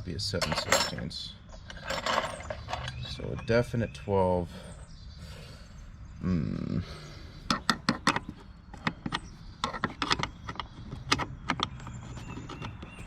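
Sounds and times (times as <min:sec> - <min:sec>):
wrench clinking on metal fitting: 0:00.3 - 0:03.5.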